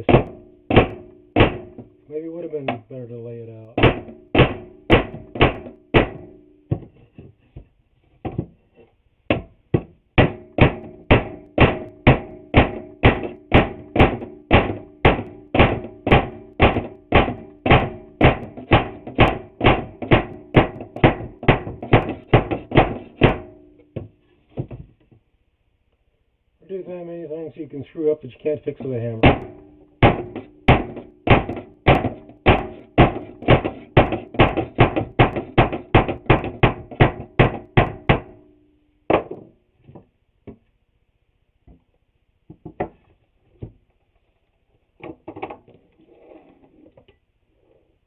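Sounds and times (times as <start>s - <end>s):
hammer striking wooden boards: 0.0s - 2.0s, 3.7s - 7.0s, 7.6s - 8.6s, 9.3s - 25.0s, 28.9s - 38.5s, 39.1s - 39.5s.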